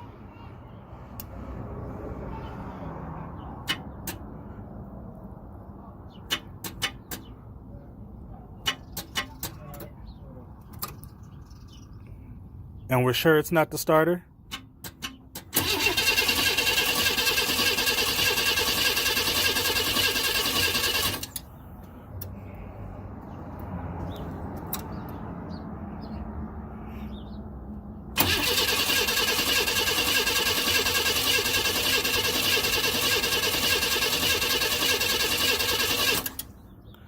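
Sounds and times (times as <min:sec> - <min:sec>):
car engine cranking: 0:14.5 - 0:21.5, 0:28.2 - 0:36.6.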